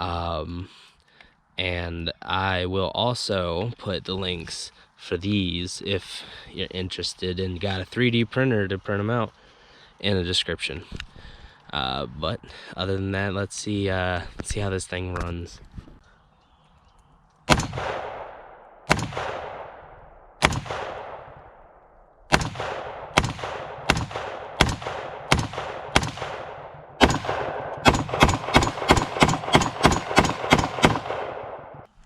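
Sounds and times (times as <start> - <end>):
rifle shots with echo: 17.5 - 31.9.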